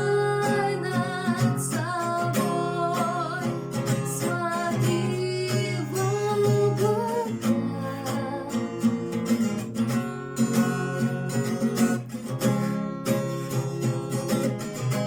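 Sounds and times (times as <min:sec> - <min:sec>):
woman singing: 0:00.0 - 0:09.7
acoustic guitar strumming: 0:00.0 - 0:15.0.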